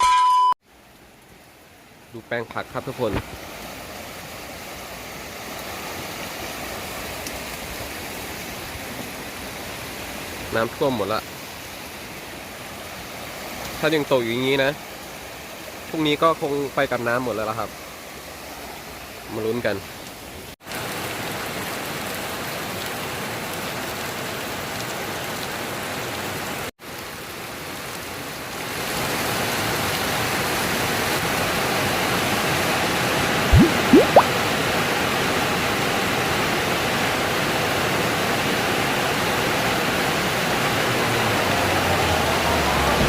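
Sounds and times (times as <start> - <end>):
heavy rain: 0.7 - 43.0.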